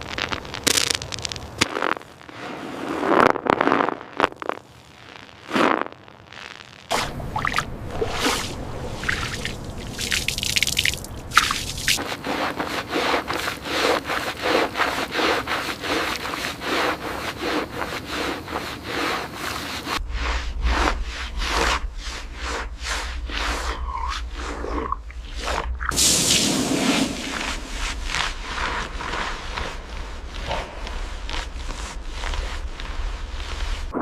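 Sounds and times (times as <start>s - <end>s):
steady low hum: 6.1s - 34.0s
scrubbing on wet surface: 6.9s - 33.9s.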